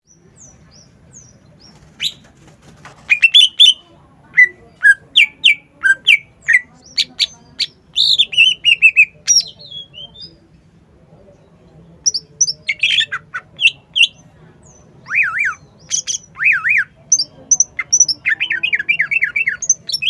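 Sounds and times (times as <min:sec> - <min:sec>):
bird singing whistled notes: 0:07.6 - 0:10.4, 0:15.0 - 0:20.0.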